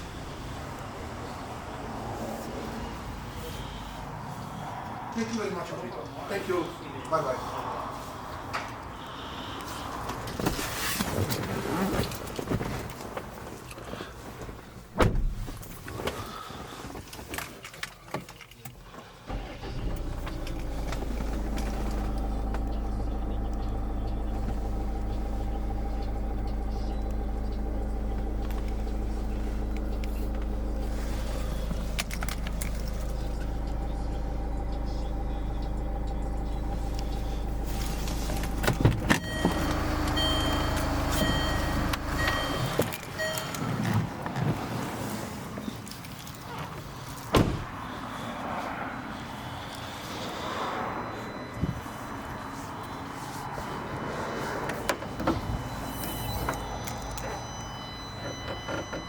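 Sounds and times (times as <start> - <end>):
car engine idling: 0.0 - 4.4, 19.3 - 44.2, 49.0 - 59.0.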